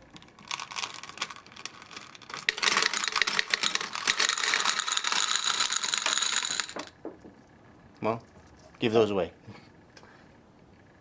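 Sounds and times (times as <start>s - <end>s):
gumballs clattering into plastic globe: 0.0s - 7.0s.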